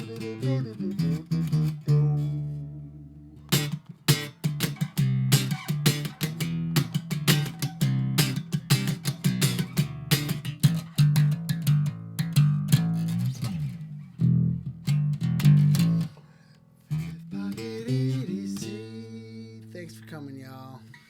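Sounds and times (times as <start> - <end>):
bass line: 0.0 - 16.1
plucked guitar music: 0.0 - 21.0.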